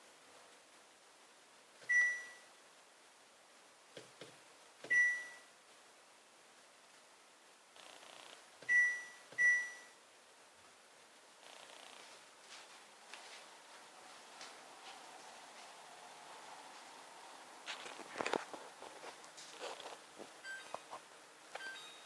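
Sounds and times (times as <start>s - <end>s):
refrigerator alarm beeps: 1.9s - 2.5s, 4.9s - 5.5s, 8.7s - 10.0s, 20.4s - 20.8s, 21.6s - 22.0s.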